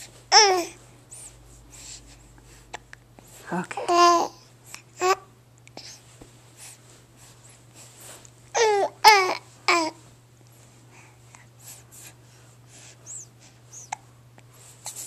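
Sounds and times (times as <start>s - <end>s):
baby cooing: 0.3s - 0.8s, 3.8s - 4.4s, 5.0s - 5.3s, 8.6s - 10.0s.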